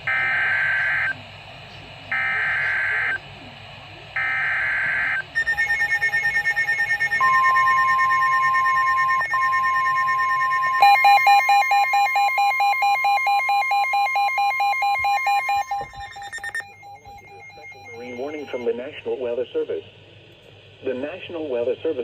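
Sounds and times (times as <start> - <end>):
steady alarm tone: 0.0 - 1.2, 2.1 - 3.2, 4.2 - 18.9
rapid beeping: 2.1 - 3.2, 4.2 - 18.9
warbling data tones: 4.2 - 18.9
pulsing alert beep: 5.4 - 18.7.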